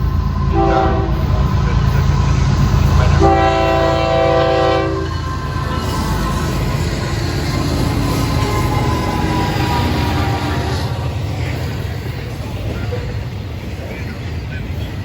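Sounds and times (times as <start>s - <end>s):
diesel engines rumbling: 0.0s - 15.0s
locomotive horn blasts: 0.5s - 1.6s, 3.0s - 5.8s.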